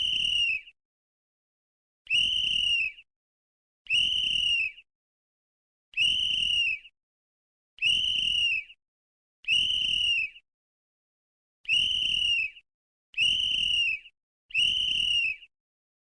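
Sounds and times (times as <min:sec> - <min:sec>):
shrill whistle blasts: 0:00.0 - 0:00.8, 0:02.1 - 0:03.1, 0:03.9 - 0:04.9, 0:05.9 - 0:07.0, 0:07.8 - 0:08.8, 0:09.4 - 0:10.4, 0:11.6 - 0:12.6, 0:13.2 - 0:15.5.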